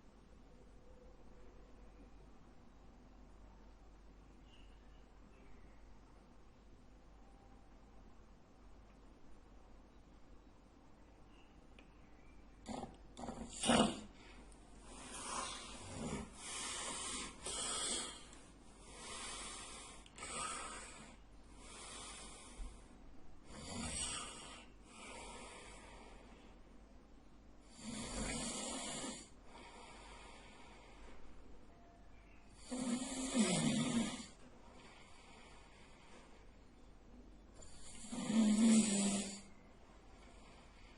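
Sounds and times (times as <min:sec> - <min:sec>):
man snoring: 0:12.7 - 0:14.1, 0:15.1 - 0:18.3, 0:23.4 - 0:25.7, 0:27.7 - 0:29.3, 0:32.6 - 0:34.4, 0:37.6 - 0:39.5.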